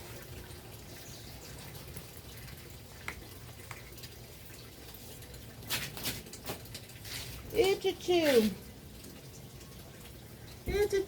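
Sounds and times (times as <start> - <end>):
rustling scrapes of potting soil: 4.9 - 8.6.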